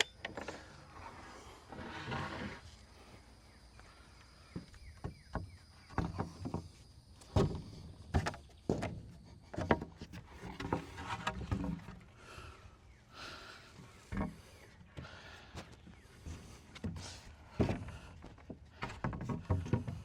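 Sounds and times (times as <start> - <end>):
knocks of wooden boards: 4.5 - 12.0.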